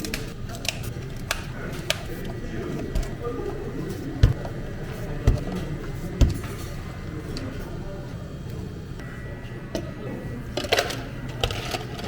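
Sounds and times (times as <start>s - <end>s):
low background hum: 0.0s - 12.0s
dull thumps: 4.2s - 4.5s, 5.2s - 6.6s.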